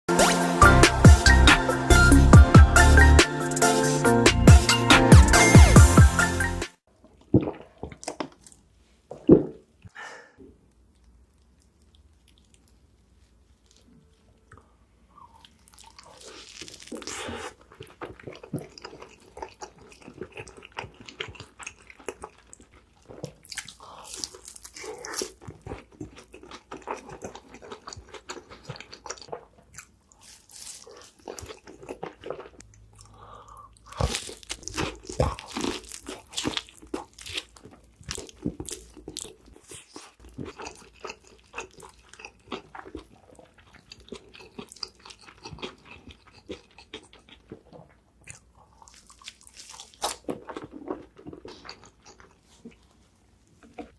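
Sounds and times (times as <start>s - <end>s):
wet chewing: 10.7s - 14.3s, 15.1s - 53.0s
crunching bites of fried chicken: 15.3s - 52.8s.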